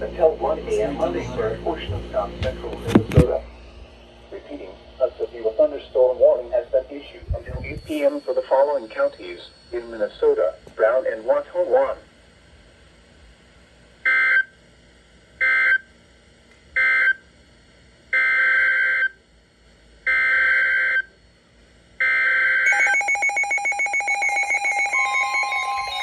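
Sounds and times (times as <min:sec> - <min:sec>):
steady high tone: 0:03.8 - 0:12.1, 0:22.7 - 0:26.0
electronic data bursts: 0:22.7 - 0:26.0
pulsing electronic attention tone: 0:22.7 - 0:26.0.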